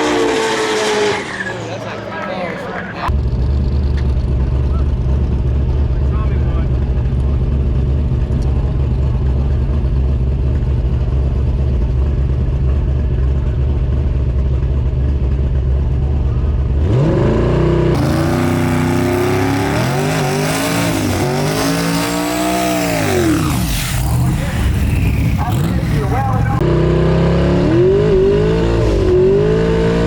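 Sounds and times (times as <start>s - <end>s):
race car engine revving: 0.0s - 3.2s, 16.8s - 30.0s.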